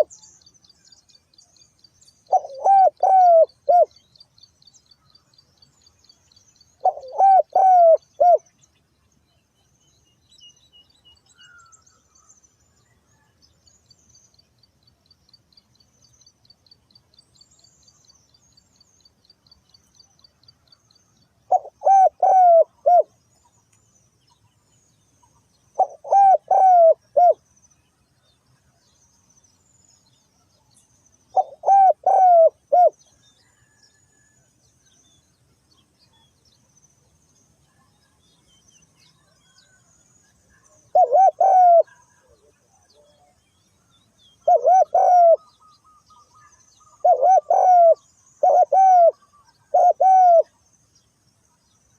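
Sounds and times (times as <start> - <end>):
small birds chirping: 0.0 - 51.9
dove cooing: 2.3 - 4.0, 6.8 - 8.5, 21.5 - 23.1, 25.8 - 27.4, 31.3 - 33.0, 40.9 - 43.2, 44.4 - 45.6, 46.4 - 50.5.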